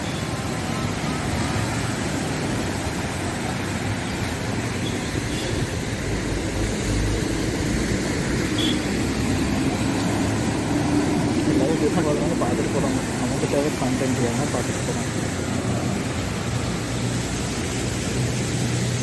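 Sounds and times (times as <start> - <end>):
road traffic rumble: 0.0 - 19.0.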